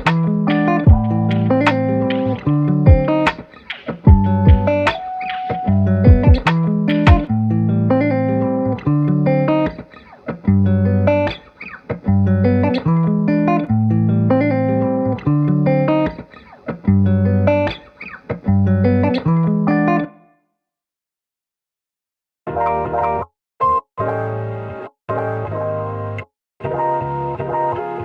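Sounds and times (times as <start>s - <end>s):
instrumental background music: 0.0s - 20.3s.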